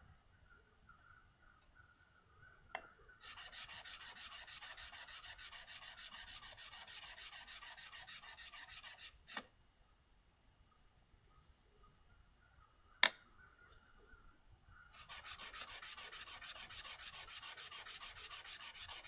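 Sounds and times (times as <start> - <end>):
metal rubbed on sandpaper: 3.2 - 9.4, 14.9 - 19.0.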